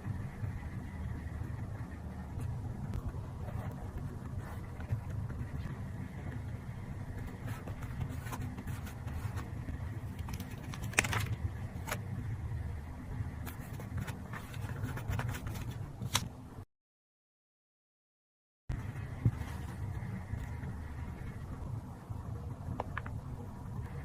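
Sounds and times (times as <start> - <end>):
steady low hum: 0.0 - 16.6, 18.7 - 24.0
paper taps rustles and scrapes: 10.1 - 12.0, 13.4 - 16.3.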